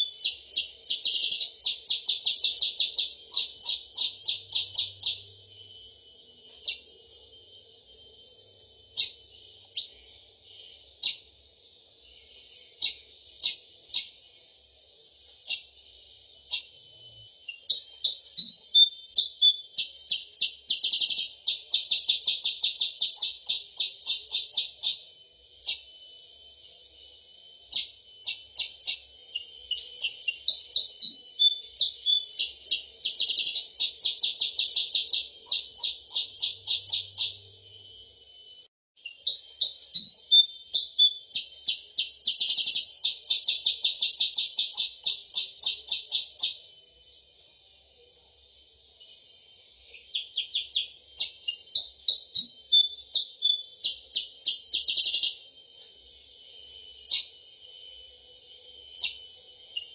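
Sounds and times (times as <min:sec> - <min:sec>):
sharp high bird chirps: 0:00.0 - 0:47.9, 0:48.5 - 0:59.9
steady high hiss: 0:00.0 - 0:59.9.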